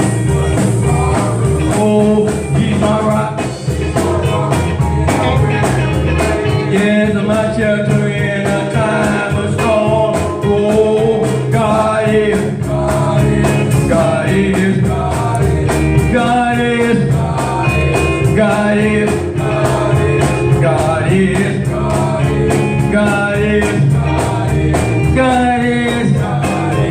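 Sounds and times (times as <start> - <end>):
band playing gospel music: 0.0 - 26.9
person singing: 0.0 - 26.9
steady drum beat: 0.0 - 26.9.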